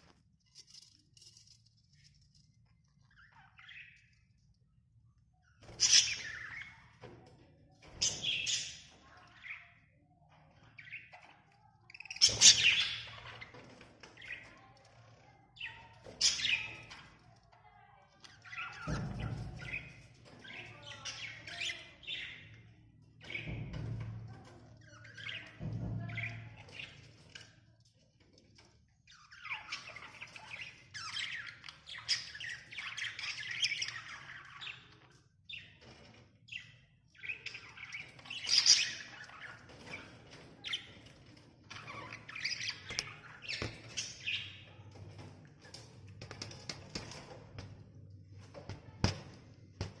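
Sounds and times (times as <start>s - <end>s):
budgerigars chirping and squawking: 5.6s - 7.1s, 7.9s - 14.7s, 15.6s - 17.1s, 29.1s - 47.2s.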